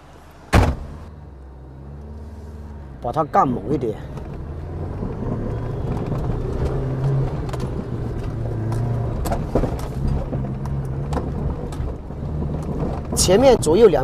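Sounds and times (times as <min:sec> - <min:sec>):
suspension knocks and clunks: 0:00.5 - 0:01.1, 0:03.9 - 0:14.0
engine running under load: 0:04.0 - 0:13.2.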